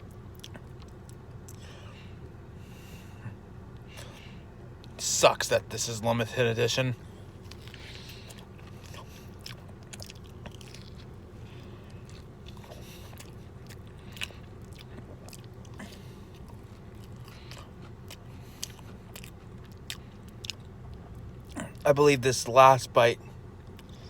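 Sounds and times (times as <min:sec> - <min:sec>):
person chewing: 0:00.1 - 0:01.8, 0:07.4 - 0:21.8
wet mouth clicks and smacks: 0:00.3 - 0:01.6, 0:07.5 - 0:11.1.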